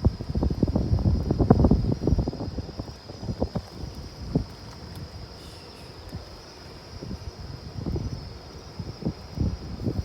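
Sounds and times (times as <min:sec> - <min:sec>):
campfire flames rumbling: 0:00.0 - 0:10.0
fire crackles: 0:00.0 - 0:10.0.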